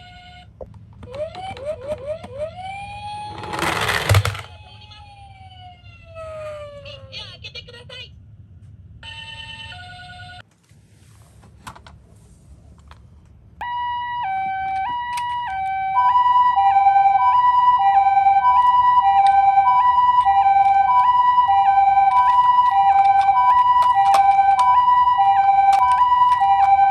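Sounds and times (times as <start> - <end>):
toy two-tone siren: 2.6 - 7.0, 13.6 - 26.9
handling clicks: 20.1 - 26.9.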